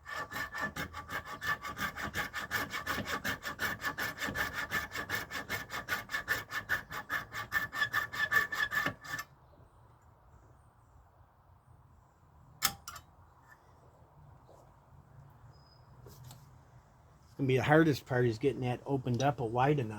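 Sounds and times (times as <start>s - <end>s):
hand saw cutting antler: 0.0s - 9.3s.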